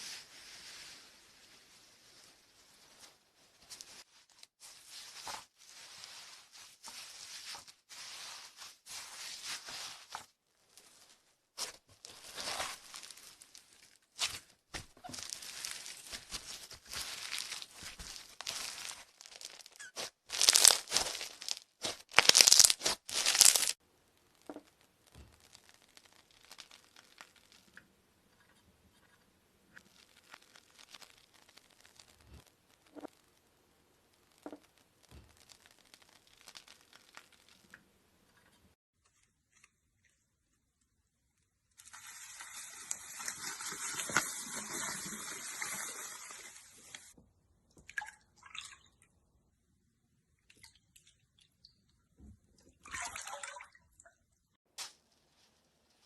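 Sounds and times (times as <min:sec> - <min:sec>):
slime stretched by hands: 0:11.6 - 0:27.8, 0:29.8 - 0:33.4, 0:34.0 - 0:37.7.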